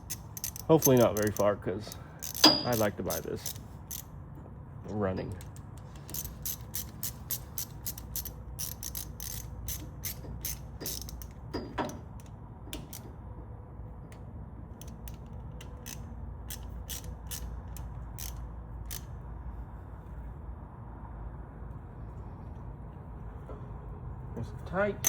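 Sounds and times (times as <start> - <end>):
ratchet wrench clicking: 0.0 - 4.1, 5.4 - 13.1, 14.7 - 19.1
metallic clink: 2.2 - 4.0.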